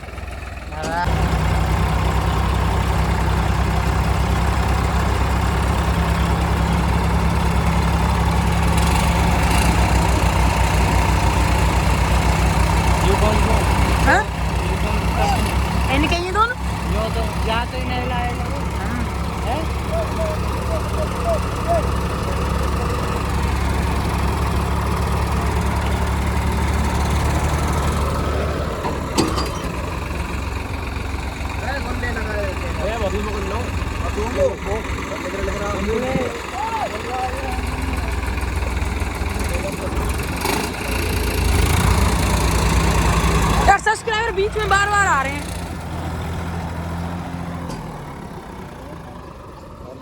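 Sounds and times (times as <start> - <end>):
tractor diesel engine idling: 0.0 - 50.0.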